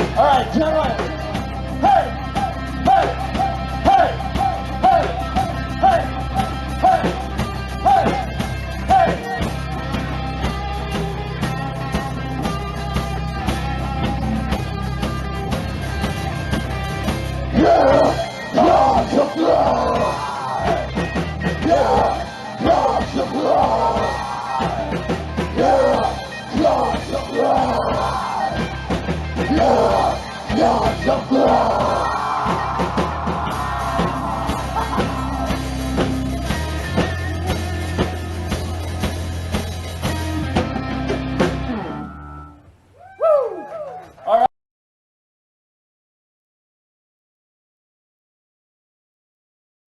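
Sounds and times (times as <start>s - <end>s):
people yelling and screaming: 0.0s - 9.5s, 17.4s - 39.2s, 42.9s - 44.5s
live rock band playing: 0.0s - 42.9s
short voice-like yells: 43.0s - 44.5s.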